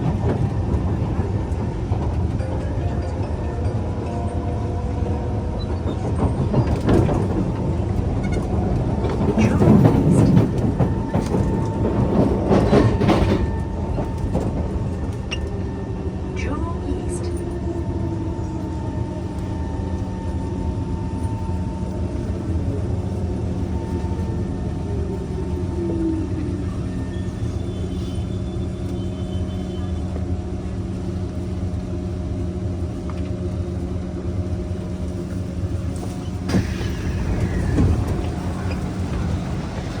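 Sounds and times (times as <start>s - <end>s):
train wheels rumbling: 0.0s - 40.0s.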